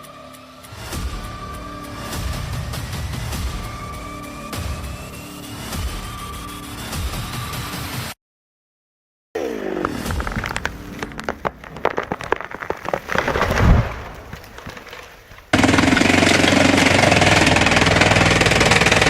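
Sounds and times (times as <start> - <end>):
wood cracking and snapping: 9.7 - 19.0
wood-splitting machine rattling: 9.8 - 19.0.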